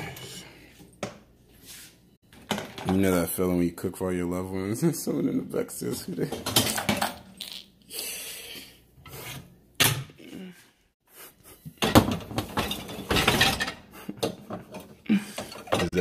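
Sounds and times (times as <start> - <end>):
utensils and cookware clattering: 2.3 - 3.1, 6.2 - 7.3, 11.6 - 16.0.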